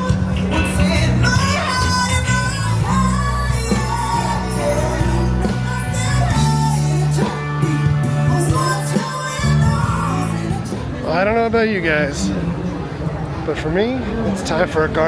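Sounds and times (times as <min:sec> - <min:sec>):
person singing: 0:00.0 - 0:10.9
rock band playing: 0:00.0 - 0:12.8.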